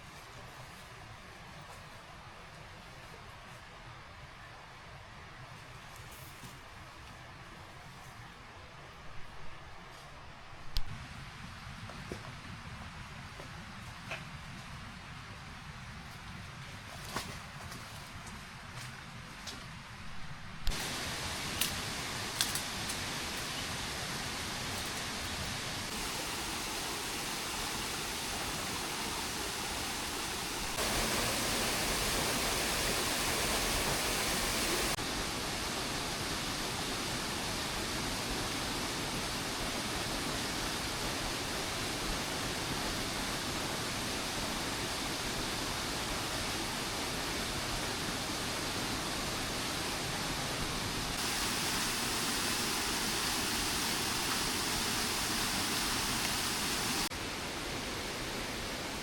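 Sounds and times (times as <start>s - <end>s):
rain hissing: 20.6s - 59.0s.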